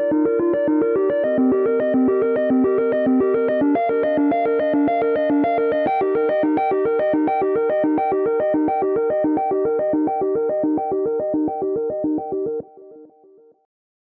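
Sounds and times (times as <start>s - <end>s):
phone ringtone synthesized melody: 0.0s - 13.2s.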